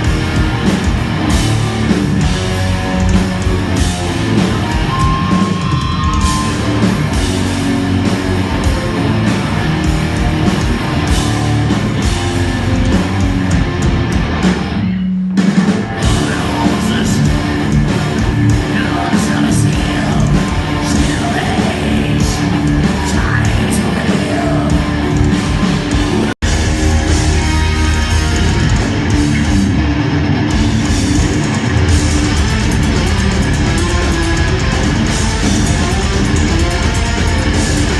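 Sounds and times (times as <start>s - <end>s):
heavy metal guitar: 0.0s - 37.9s
person singing: 16.0s - 17.4s, 18.5s - 25.2s.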